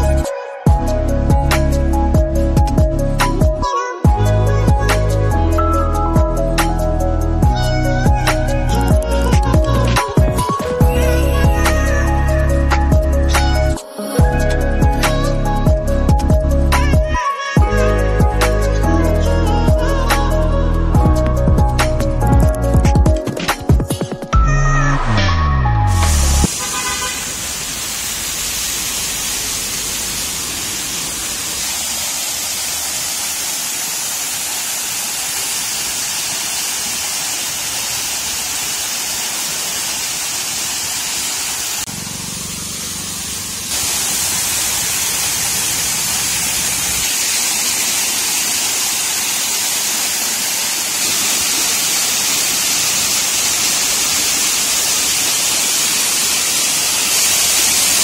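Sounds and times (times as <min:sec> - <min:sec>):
waterfall rushing: 0:25.9 - 0:58.0.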